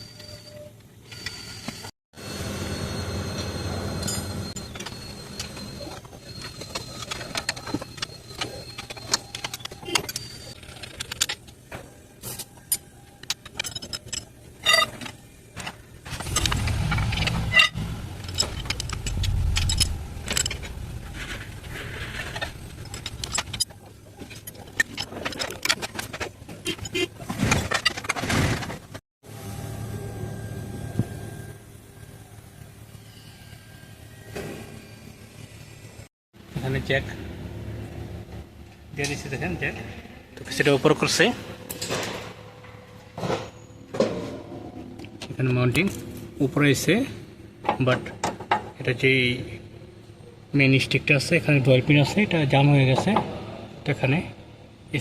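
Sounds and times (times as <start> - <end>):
metal tools clinking: 12.2 - 28.2
low rumble: 16.1 - 23.5.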